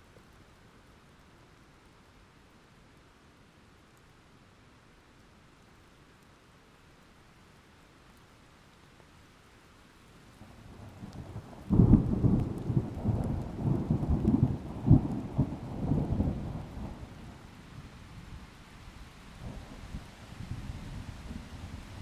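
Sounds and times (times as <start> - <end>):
rain hiss: 0.0 - 22.0
thunder rumbling and cracking: 10.7 - 17.4.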